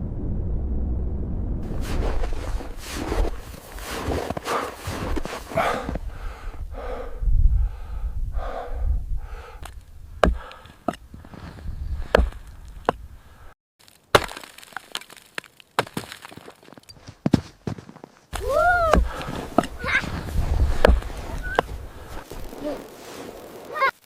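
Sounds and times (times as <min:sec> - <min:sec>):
sharp cracks and knocks: 0:12.1 - 0:13.0, 0:13.8 - 0:17.4, 0:18.3 - 0:22.6.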